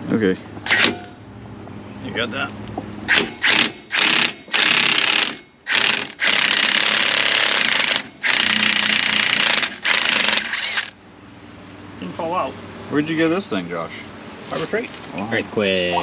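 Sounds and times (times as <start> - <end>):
impact wrench hammering: 3.1 - 10.9.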